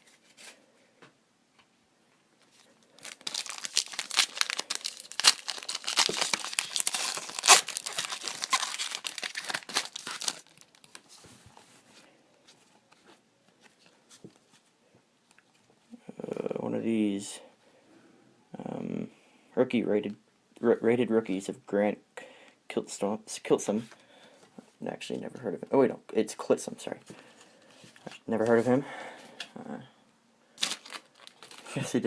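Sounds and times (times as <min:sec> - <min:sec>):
foil wrapper tearing and crinkling: 0:02.6 - 0:11.1, 0:30.6 - 0:31.8.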